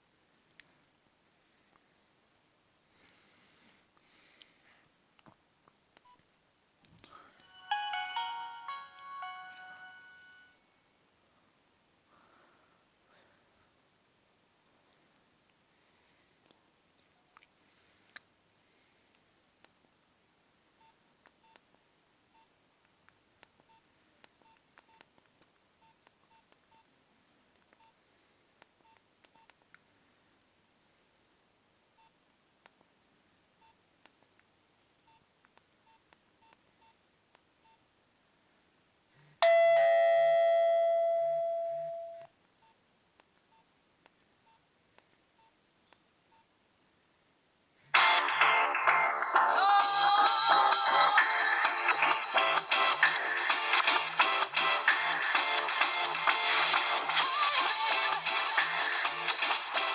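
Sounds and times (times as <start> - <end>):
bell-like ringtone chime: 7.4 - 10.6, 39.4 - 42.3.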